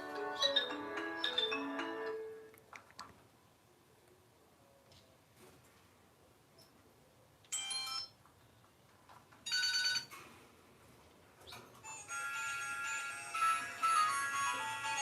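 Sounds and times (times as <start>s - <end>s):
mobile phone ringtone: 9.5s - 10.1s, 11.8s - 15.0s.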